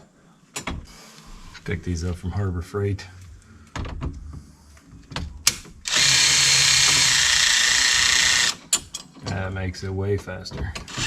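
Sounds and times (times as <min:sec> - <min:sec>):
power driver spinning: 0:05.8 - 0:08.6.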